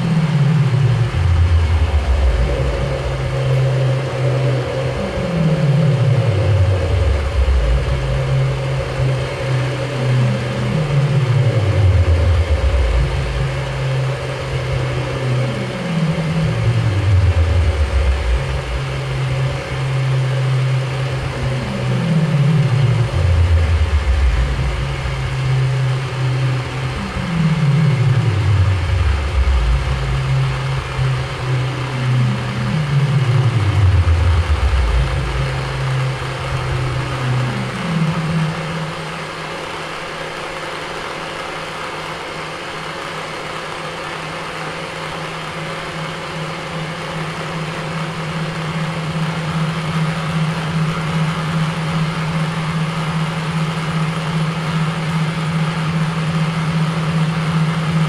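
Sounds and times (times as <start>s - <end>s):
falling pitch glides: 0.0s - 40.6s
low held tone: 0.0s - 43.4s, 44.0s - 58.0s
steady high drone: 0.0s - 58.0s.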